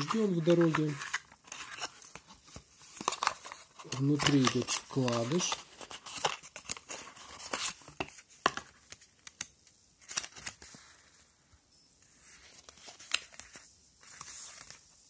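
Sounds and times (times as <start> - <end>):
cardboard rustling and crinkling: 0.0 - 9.4, 10.0 - 11.2, 12.2 - 14.9.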